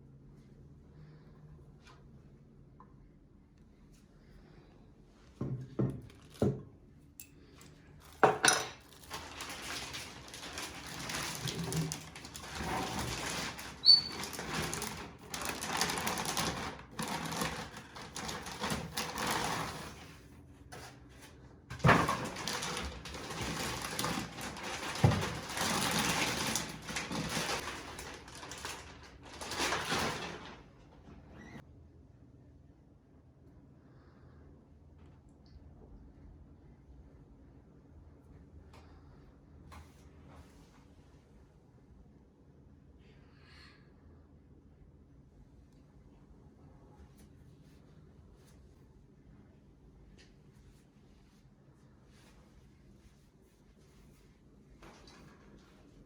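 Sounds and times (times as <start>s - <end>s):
wrapping rustling and scraping: 8.0s - 31.6s.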